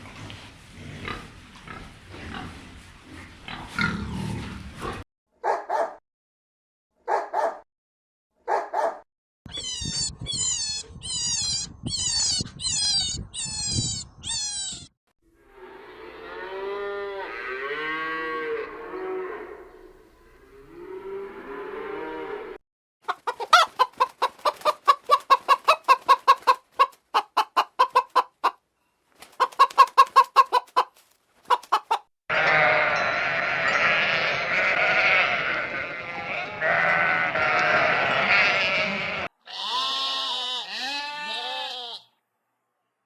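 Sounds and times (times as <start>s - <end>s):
chorus of farm animals calling: 0.0s - 5.8s, 15.4s - 28.6s, 31.5s - 42.2s
cow mooing: 15.4s - 22.6s, 32.3s - 42.1s.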